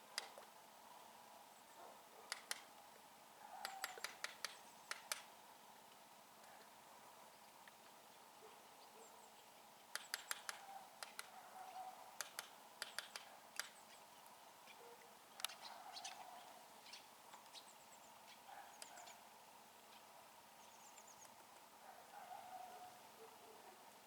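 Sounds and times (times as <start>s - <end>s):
woodpecker tapping on wood: 2.3s - 2.7s, 3.6s - 5.3s, 9.9s - 11.4s, 12.2s - 13.8s
small birds chirping: 7.3s - 23.5s.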